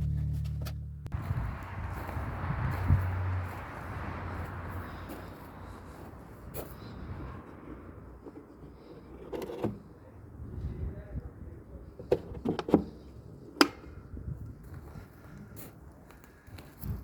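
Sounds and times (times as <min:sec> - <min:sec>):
low rumbling background: 0:00.0 - 0:05.0.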